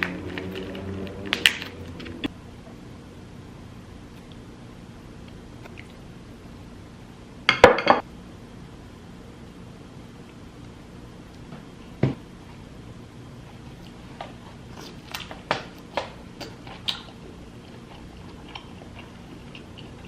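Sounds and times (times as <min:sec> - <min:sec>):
low hum: 0:00.0 - 0:14.7
close chewing with mouth clicks: 0:13.6 - 0:20.0.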